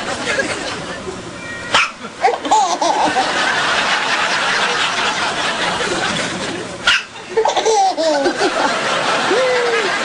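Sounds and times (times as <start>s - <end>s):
people laughing and chattering: 0.0s - 10.0s
baby giggling: 2.1s - 3.3s, 7.3s - 8.6s.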